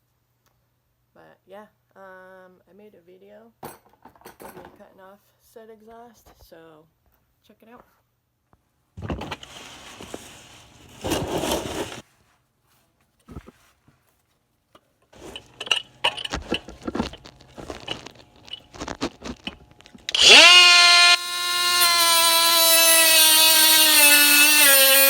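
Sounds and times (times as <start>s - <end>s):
handling knocks and clicks: 13.2s - 13.6s, 14.8s - 20.2s
die grinder whining: 15.2s - 25.0s.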